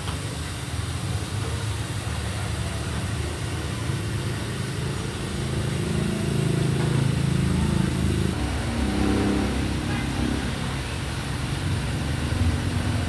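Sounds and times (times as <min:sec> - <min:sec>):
motor humming: 0:04.7 - 0:13.0.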